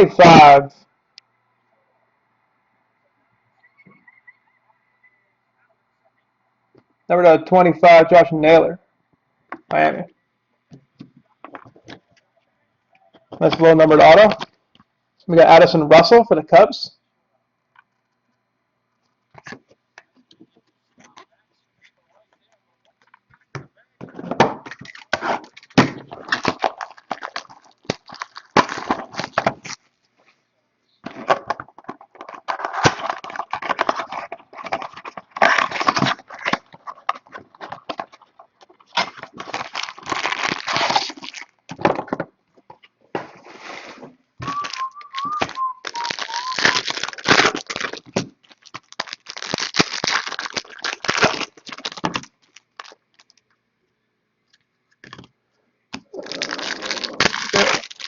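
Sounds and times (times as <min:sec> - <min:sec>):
wrappers crinkling and tearing: 0:24.8 - 0:29.9, 0:31.9 - 0:41.6, 0:44.4 - 0:53.4, 0:56.1 - 0:58.0
cards rustling and sliding: 0:31.1 - 0:41.3.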